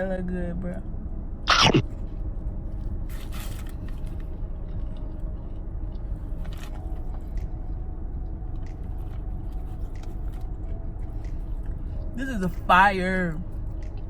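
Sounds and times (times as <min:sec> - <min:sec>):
steady low rumble: 0:00.0 - 0:14.0
chewing crispy sandwich: 0:02.8 - 0:12.2.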